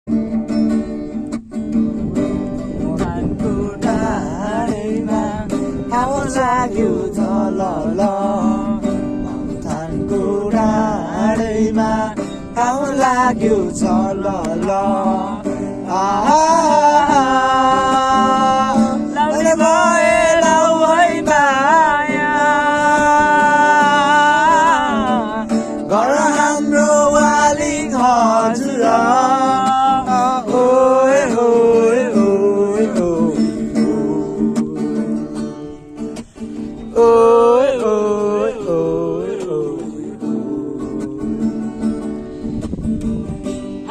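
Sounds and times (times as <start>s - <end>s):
plucked string accompaniment: 0.1s - 43.9s
person singing long wavering notes: 9.7s - 35.4s, 36.9s - 42.1s.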